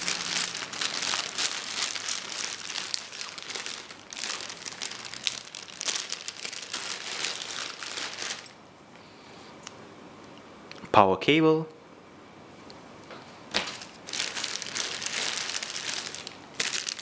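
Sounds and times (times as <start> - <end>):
packaging crinkling: 0.0 - 8.6, 13.6 - 17.0.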